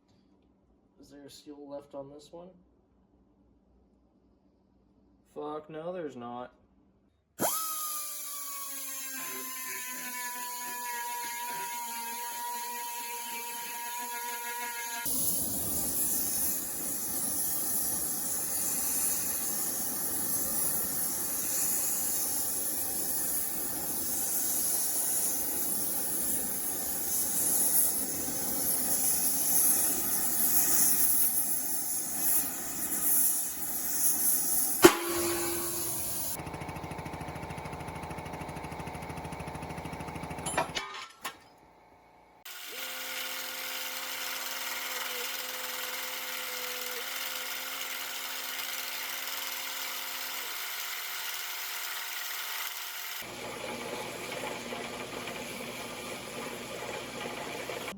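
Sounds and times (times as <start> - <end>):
power tool whining: 7.4 - 41.4, 42.5 - 57.9.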